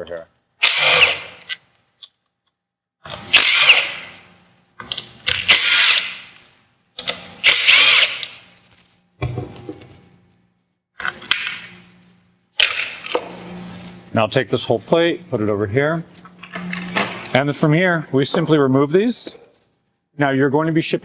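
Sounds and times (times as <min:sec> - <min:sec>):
power drill spinning bolts: 0:00.6 - 0:01.6, 0:03.3 - 0:04.1, 0:05.3 - 0:06.4, 0:07.0 - 0:08.4.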